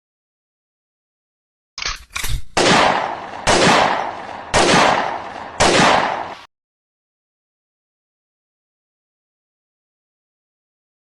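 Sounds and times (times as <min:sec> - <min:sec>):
gunshots echoing: 0:02.2 - 0:06.5.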